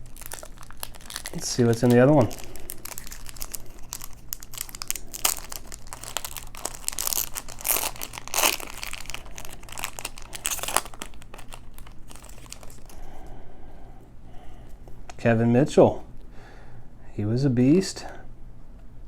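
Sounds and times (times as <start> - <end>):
paper wrapper crinkling and ripping: 0.0 - 13.2.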